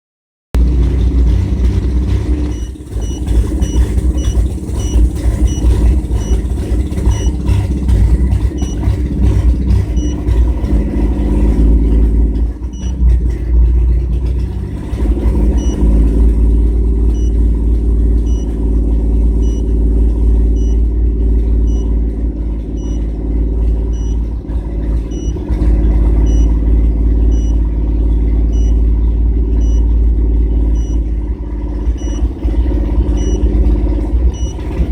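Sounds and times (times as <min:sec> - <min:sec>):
engine running with misfire: 0:00.6 - 0:34.9
short high beeps: 0:02.5 - 0:06.4, 0:07.1 - 0:07.4, 0:17.1 - 0:17.4, 0:18.2 - 0:18.6, 0:19.4 - 0:19.7, 0:20.5 - 0:20.8, 0:21.7 - 0:22.0, 0:22.8 - 0:23.1, 0:23.9 - 0:24.2, 0:25.1 - 0:25.4, 0:26.2 - 0:26.6, 0:27.3 - 0:27.6, 0:28.5 - 0:28.8, 0:29.5 - 0:29.9, 0:30.8 - 0:31.0, 0:32.0 - 0:32.4, 0:33.2 - 0:33.4, 0:34.4 - 0:34.6.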